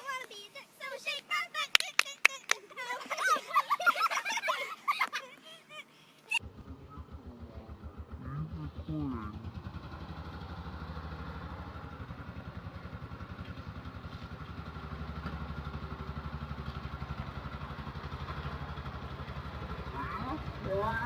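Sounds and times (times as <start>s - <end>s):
vehicle engine running: 6.4s - 21.0s.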